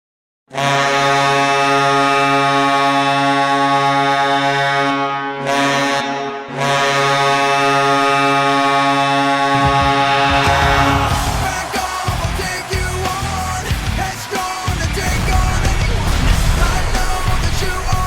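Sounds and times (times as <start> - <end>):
hockey goal horn blasting: 0.5 - 13.6.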